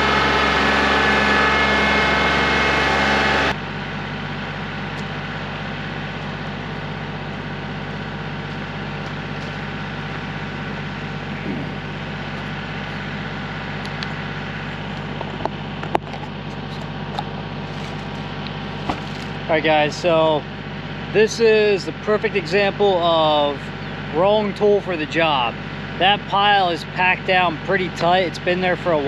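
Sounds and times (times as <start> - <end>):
tractor diesel engine running: 0.0 - 29.0.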